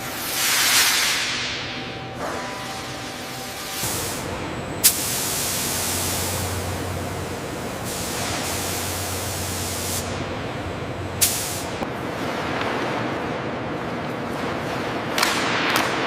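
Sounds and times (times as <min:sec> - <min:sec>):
steady loud hiss: 0:00.0 - 0:11.8
low hum: 0:01.4 - 0:12.0.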